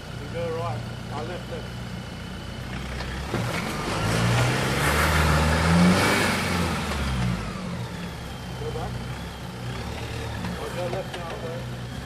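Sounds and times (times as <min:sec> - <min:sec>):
engine revving under load: 0:00.0 - 0:12.0.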